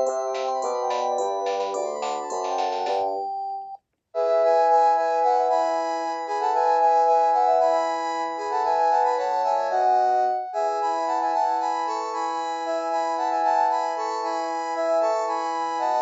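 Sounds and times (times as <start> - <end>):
cordless phone ringtone melody: 0.0 - 3.8.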